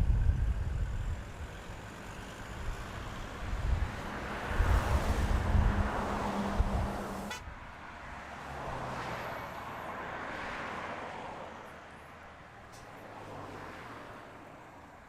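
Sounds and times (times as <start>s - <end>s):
heavy low wind rumble: 0.0s - 1.6s, 2.6s - 7.6s
road traffic: 0.0s - 15.0s.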